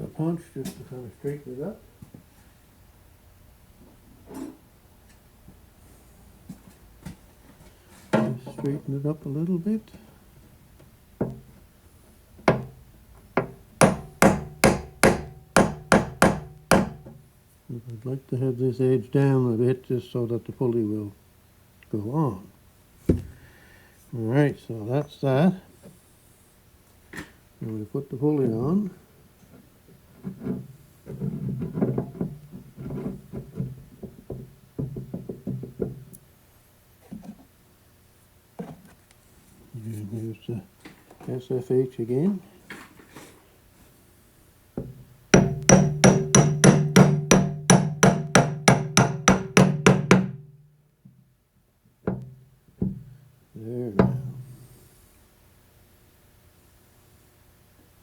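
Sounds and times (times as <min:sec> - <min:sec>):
hammer tapping metal punch: 0:12.4 - 0:12.8, 0:13.4 - 0:17.2, 0:44.8 - 0:50.6, 0:54.0 - 0:54.4.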